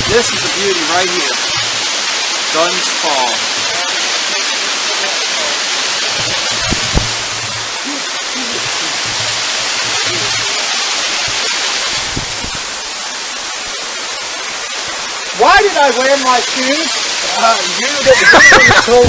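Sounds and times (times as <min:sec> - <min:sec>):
waterfall rushing: 0:00.0 - 0:19.0
low knocks: 0:06.1 - 0:07.7, 0:08.7 - 0:10.5.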